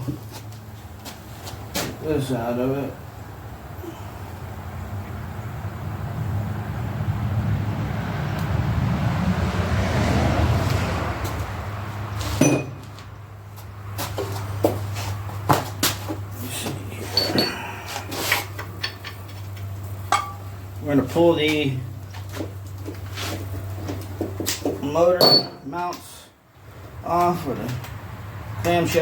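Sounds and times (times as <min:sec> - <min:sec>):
metal tools clattering: 0:17.0 - 0:20.5, 0:25.2 - 0:25.8.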